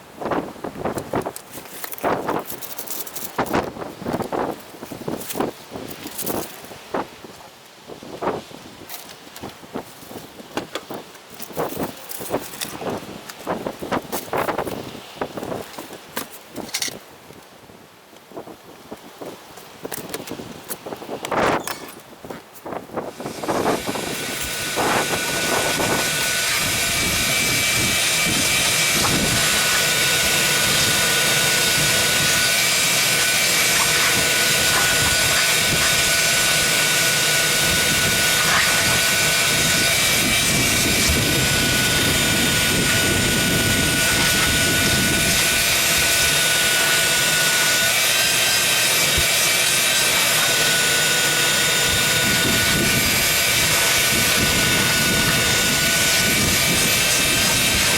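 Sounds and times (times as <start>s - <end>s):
vacuum cleaner running: 23.1s - 57.9s.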